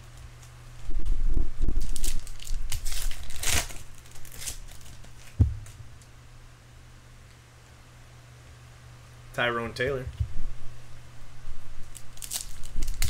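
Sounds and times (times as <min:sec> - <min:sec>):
wrapper crinkling and tearing: 0:01.8 - 0:05.8, 0:11.8 - 0:13.0
short thump: 0:05.4 - 0:05.9.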